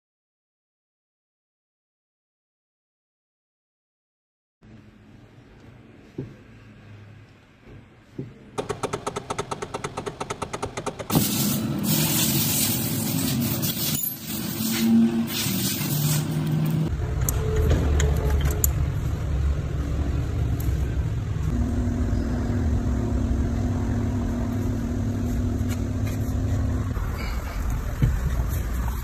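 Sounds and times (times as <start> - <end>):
car engine rumbling: 16.2 - 29.0.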